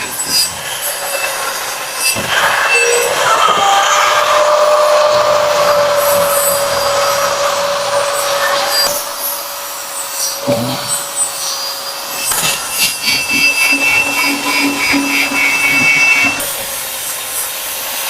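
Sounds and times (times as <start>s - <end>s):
axe blade grinding on abrasive: 12.0s - 16.9s.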